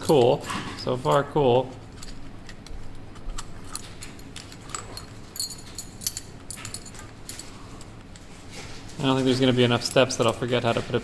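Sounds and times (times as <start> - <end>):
metal padlock clicks and clinks: 3.3 - 7.5.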